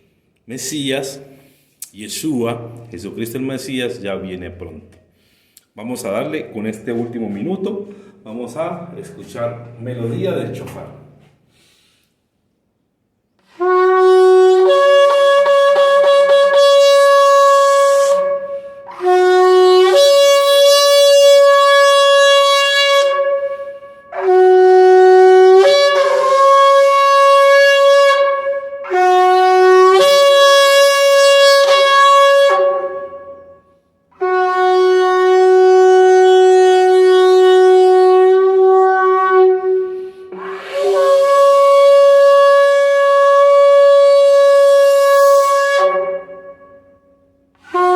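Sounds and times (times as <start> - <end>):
shofar blasts: 13.4 - 47.9.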